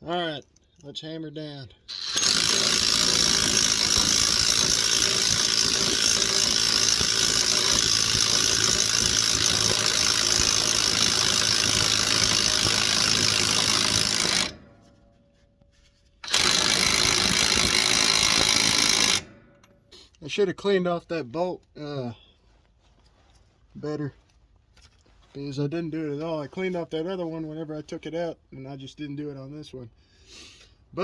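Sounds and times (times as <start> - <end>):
impact wrench hammering nut: 1.9 - 15.0, 16.2 - 19.8.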